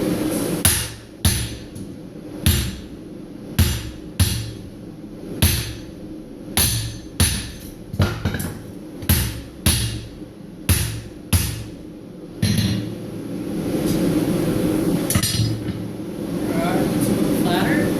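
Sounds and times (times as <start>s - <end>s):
hammer striking steel on anvil: 0.6s - 1.8s, 2.4s - 2.9s, 3.6s - 4.6s, 5.4s - 5.9s, 6.6s - 10.1s, 10.7s - 11.8s, 12.4s - 12.9s.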